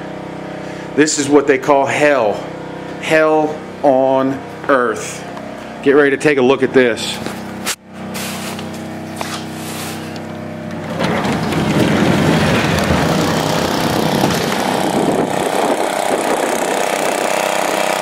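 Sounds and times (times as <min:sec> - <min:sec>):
small engine running: 0:00.0 - 0:01.0, 0:07.0 - 0:18.0
wind gusting on microphone: 0:10.8 - 0:18.0.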